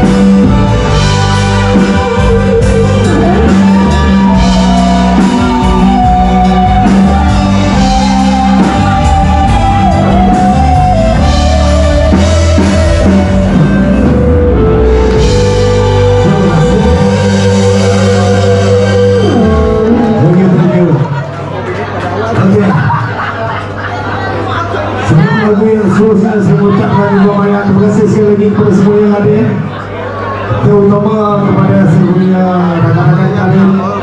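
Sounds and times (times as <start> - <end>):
drum kit: 0.0 - 20.8
held melody line: 0.0 - 21.2
bass: 0.0 - 34.0
live rock band: 0.0 - 34.0.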